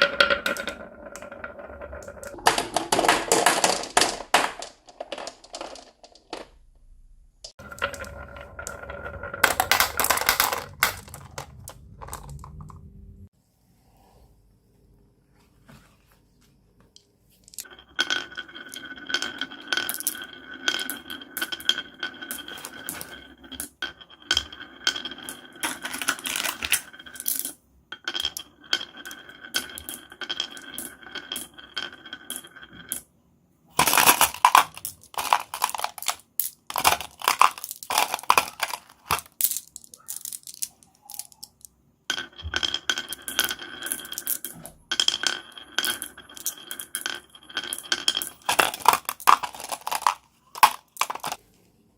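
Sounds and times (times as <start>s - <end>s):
marbles clattering down a track: 0.0s - 6.6s, 7.5s - 12.9s, 17.5s - 33.1s, 33.7s - 51.4s.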